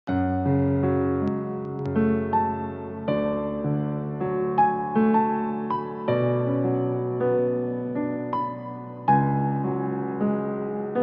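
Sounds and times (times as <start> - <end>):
soft keyboard chords: 0.1 - 11.0.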